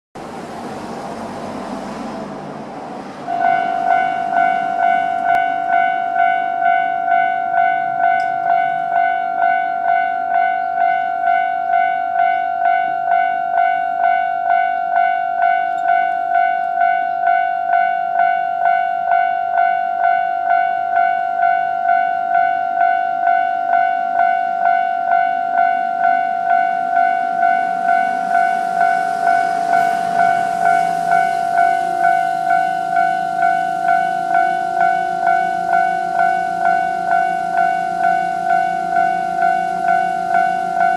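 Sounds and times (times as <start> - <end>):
level crossing warning bell: 3.2 - 40.9.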